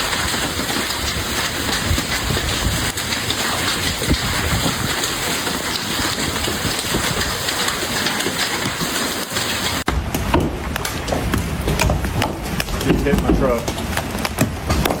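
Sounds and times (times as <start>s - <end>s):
heavy hail falling: 0.0s - 9.9s.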